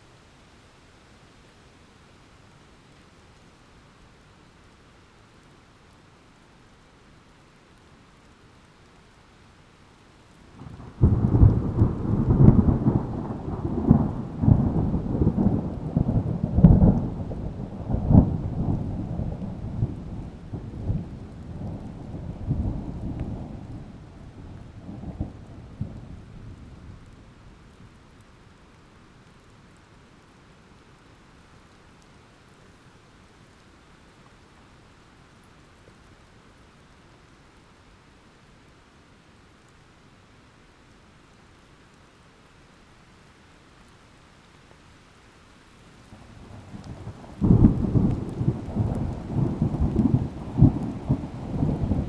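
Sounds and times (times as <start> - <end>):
steady rain: 0.0 - 52.0
rolling thunder: 10.6 - 27.0, 46.5 - 52.0.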